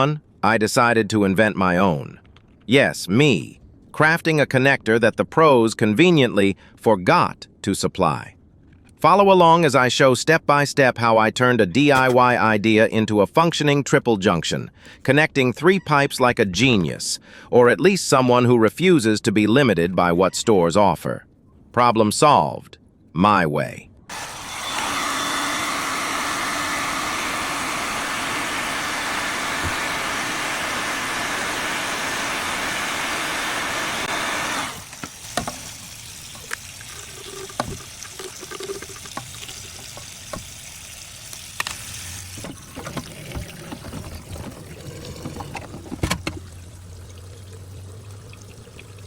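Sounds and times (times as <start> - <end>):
water running: 24.1 - 49.0
water trickling: 34.8 - 49.0.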